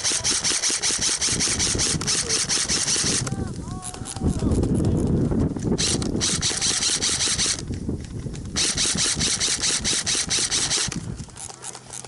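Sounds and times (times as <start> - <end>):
airsoft gun firing rapid bursts: 0.0 - 3.3, 5.8 - 7.6, 8.6 - 11.1
rustling movement: 0.3 - 12.0.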